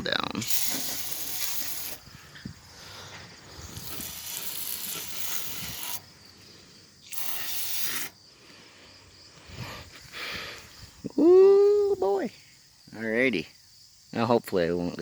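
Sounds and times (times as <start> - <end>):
aerosol spray can hissing: 0.4 - 2.0, 3.6 - 6.1, 7.0 - 8.2.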